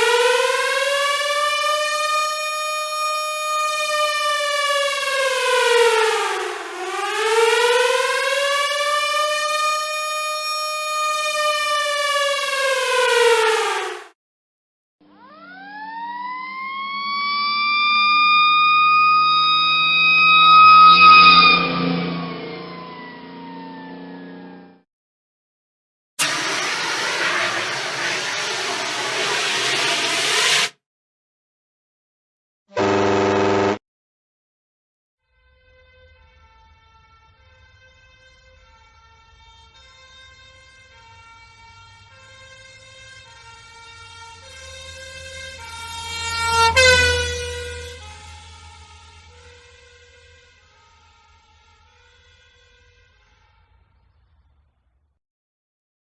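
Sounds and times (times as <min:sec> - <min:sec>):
fire truck siren wailing: 0:00.0 - 0:14.2, 0:15.0 - 0:24.8, 0:26.2 - 0:30.7, 0:32.8 - 0:33.8, 0:35.9 - 0:53.9
truck engine humming: 0:32.8 - 0:33.8.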